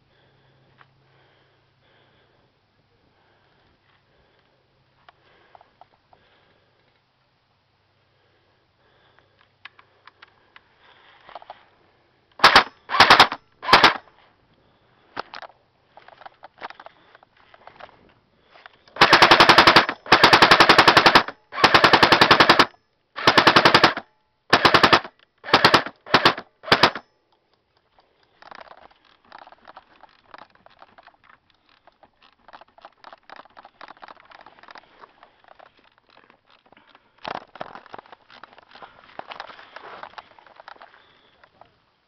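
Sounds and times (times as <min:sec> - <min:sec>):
faint ticking and rustling: 0:12.3 - 0:42.0
airsoft gun firing bursts: 0:12.4 - 0:14.0, 0:19.0 - 0:27.0.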